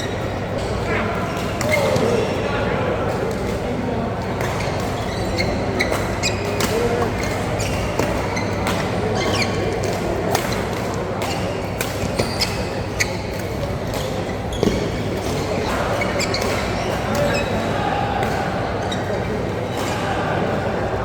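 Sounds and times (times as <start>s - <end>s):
murmur of hall noise: 0.0s - 21.0s
shoe squeaks on floor: 4.4s - 9.8s, 11.3s - 17.6s.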